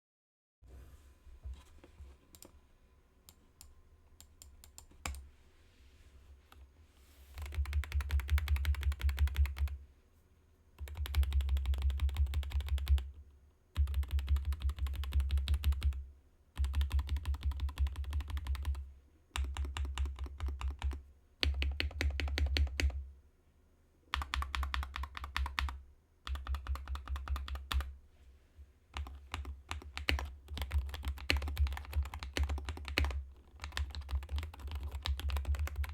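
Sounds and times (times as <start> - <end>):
keyboard typing: 3.6 - 5.2, 7.4 - 9.8, 10.8 - 13.1, 13.8 - 16.0, 16.6 - 18.8, 19.4 - 23.0, 24.1 - 27.9, 29.0 - 35.9.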